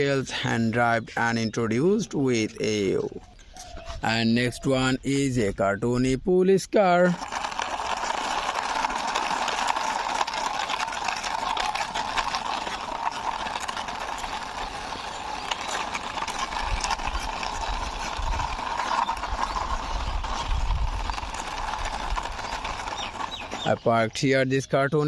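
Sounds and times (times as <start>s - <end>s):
toy car wheels rattling on concrete: 6.8s - 24.7s.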